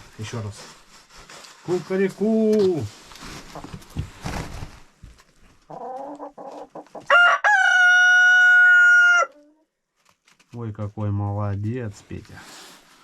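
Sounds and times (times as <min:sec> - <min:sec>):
rooster crowing: 0:07.1 - 0:09.4.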